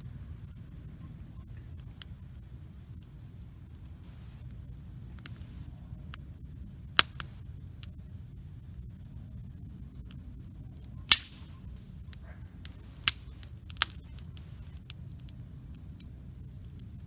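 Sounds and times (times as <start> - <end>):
campfire burning with crackles: 0.0 - 17.0
fire pop: 6.9 - 8.0, 10.0 - 17.0.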